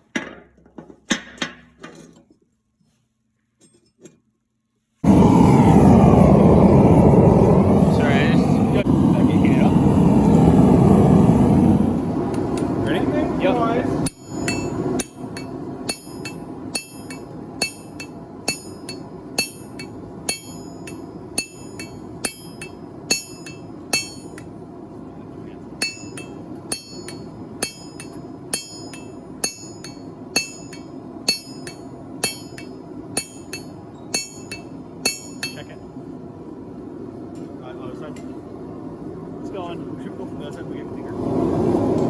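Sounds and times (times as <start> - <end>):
low hum: 5.0 - 42.0
hammer ringing on anvil: 14.1 - 24.5, 25.8 - 35.8.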